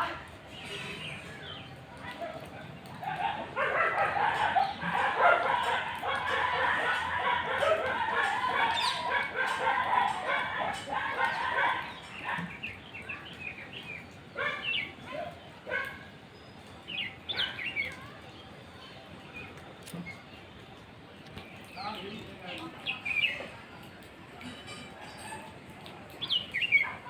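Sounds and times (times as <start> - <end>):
chorus of animal calls: 2.9 - 12.8.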